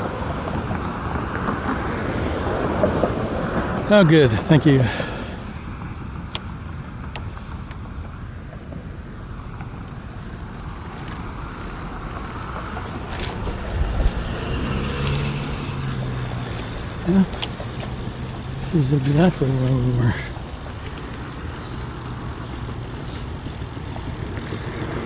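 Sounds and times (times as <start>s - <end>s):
road traffic: 0.0s - 25.0s
vehicle engine hum: 0.0s - 25.0s
wind on microphone: 10.7s - 18.6s.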